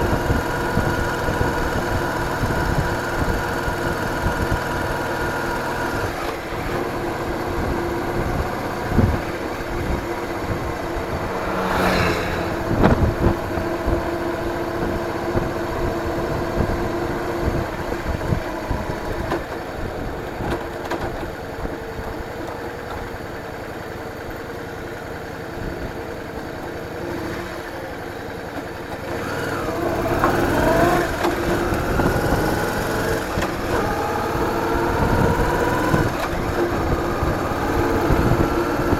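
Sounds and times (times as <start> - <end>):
vehicle engine running: 0.0 - 38.9
wind buffeting microphone: 5.9 - 20.6, 30.0 - 38.9.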